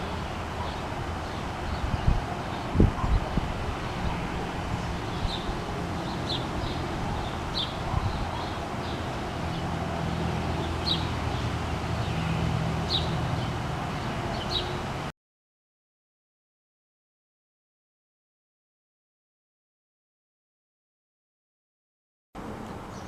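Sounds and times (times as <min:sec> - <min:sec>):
bird chirping: 0:00.0 - 0:09.7, 0:10.4 - 0:14.8.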